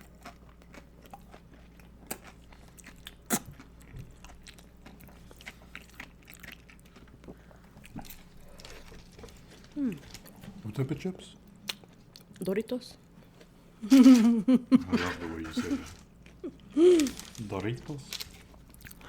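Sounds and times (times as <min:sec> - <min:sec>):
tortilla chips crunching: 0:07.9 - 0:10.8, 0:15.2 - 0:19.0.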